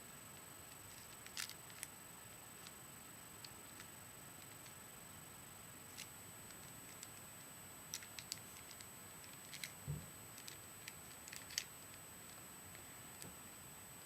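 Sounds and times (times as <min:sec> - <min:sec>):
plastic cube clicks: 0:10.4 - 0:11.7.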